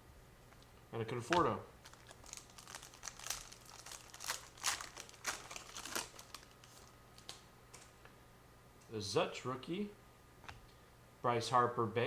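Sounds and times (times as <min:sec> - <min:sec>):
foil wrapper crinkling: 0:01.8 - 0:07.4.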